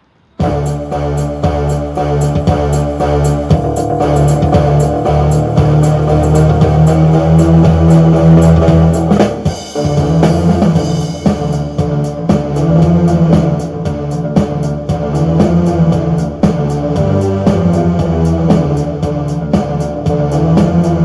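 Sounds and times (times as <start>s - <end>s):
synthesizer music: 0.4s - 21.0s
ticking beat: 0.4s - 21.0s.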